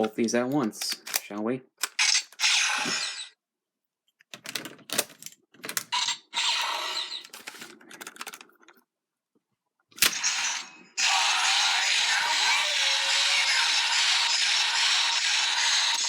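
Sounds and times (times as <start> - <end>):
plastic toy clicks: 0.0 - 2.4
electronic toy sound effects: 2.0 - 3.4, 5.9 - 7.3, 10.1 - 16.0.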